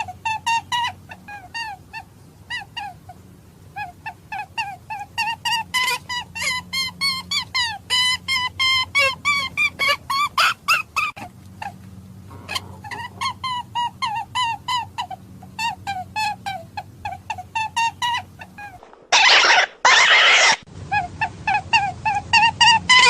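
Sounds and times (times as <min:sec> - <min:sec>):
hare screaming: 0:19.1 - 0:20.6.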